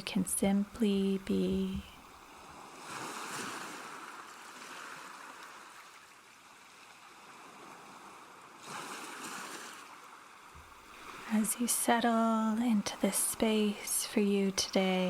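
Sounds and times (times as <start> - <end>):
water flowing: 10.4 - 15.0.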